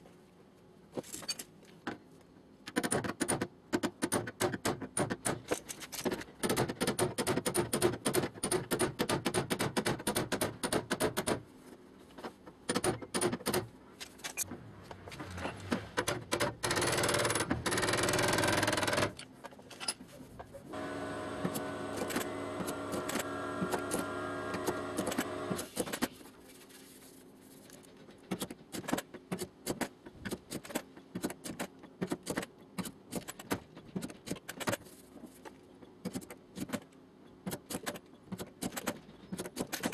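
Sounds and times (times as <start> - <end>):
loud rushing power tool: 20.7 - 25.7
motor humming: 20.7 - 25.7.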